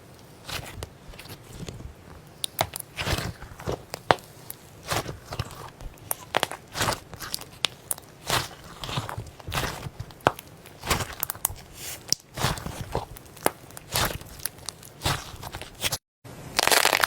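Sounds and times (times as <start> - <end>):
slime squishing and popping: 0.0 - 16.0.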